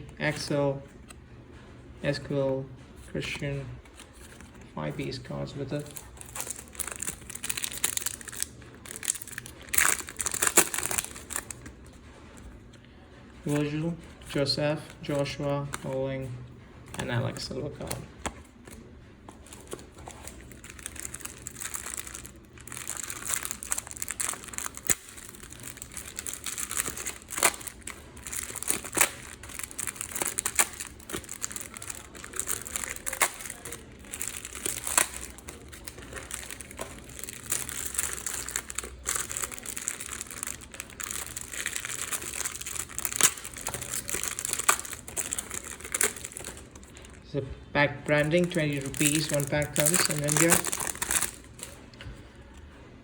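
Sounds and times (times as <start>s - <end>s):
foil wrappers crinkling: 3.8s - 12.5s, 13.4s - 16.1s, 16.9s - 47.2s, 48.0s - 51.9s.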